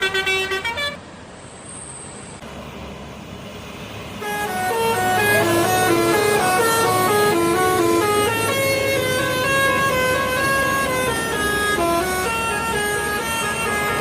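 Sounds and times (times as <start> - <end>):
bus horn playing a melody: 0.0 - 1.1, 4.2 - 14.0
engine and traffic hum: 0.0 - 14.0.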